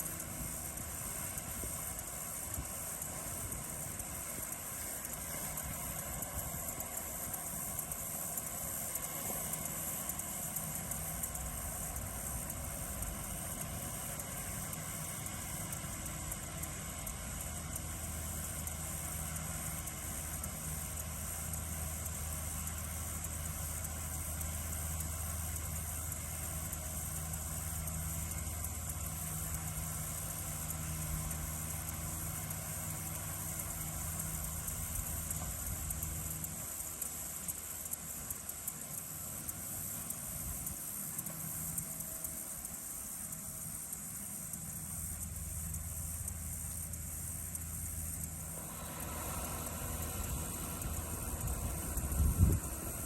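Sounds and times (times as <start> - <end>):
crickets chirring: 0.0 - 53.0
tractor engine running: 0.0 - 53.0.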